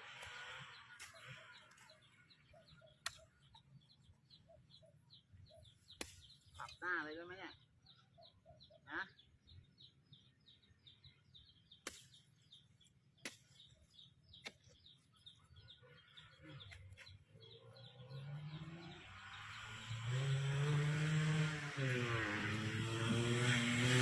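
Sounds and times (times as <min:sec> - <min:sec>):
small bird chirping: 0:00.0 - 0:24.0
vehicle engine approaching: 0:17.3 - 0:24.0.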